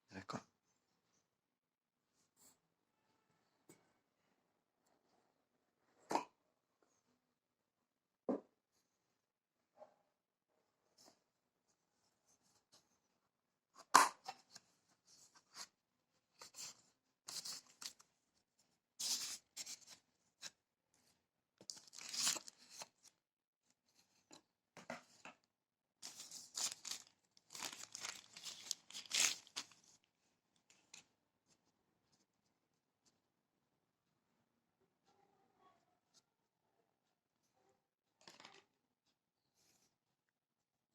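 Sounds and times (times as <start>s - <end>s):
packaging tearing and rustling: 21.7s - 22.8s, 26.0s - 29.9s.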